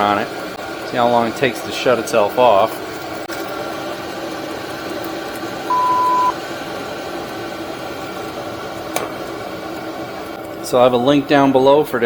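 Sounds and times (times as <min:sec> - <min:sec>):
heater blower droning: 0:00.0 - 0:12.0
electronic beep: 0:05.7 - 0:06.4.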